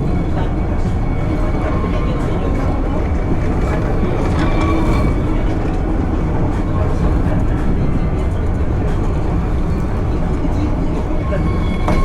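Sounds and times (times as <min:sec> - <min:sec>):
steel wheels rumbling on rails: 0:00.0 - 0:12.0.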